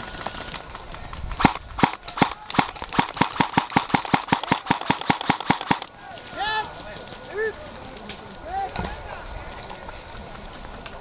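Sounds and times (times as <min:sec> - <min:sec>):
airsoft gun firing: 0:01.4 - 0:05.9.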